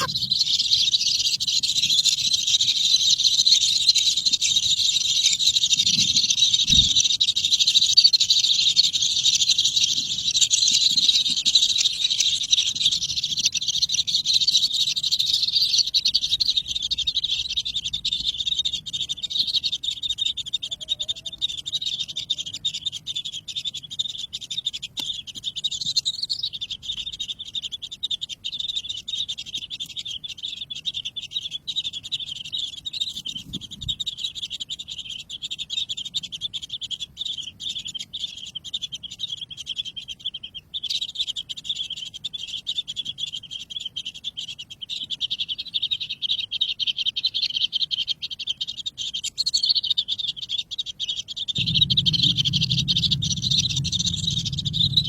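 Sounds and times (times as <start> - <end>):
baby birds chirping: 0.0 - 55.0
low rumble: 51.6 - 55.0.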